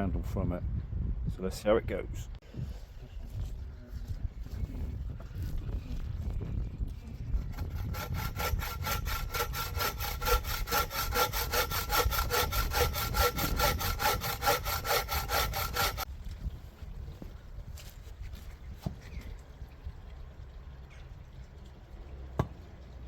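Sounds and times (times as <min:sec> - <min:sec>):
hand saw cutting wood: 0:07.4 - 0:16.1.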